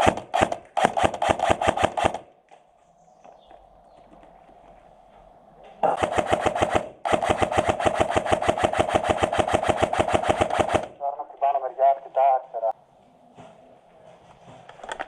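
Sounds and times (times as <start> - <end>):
airsoft gun firing bursts: 0.0 - 2.3, 5.8 - 11.0.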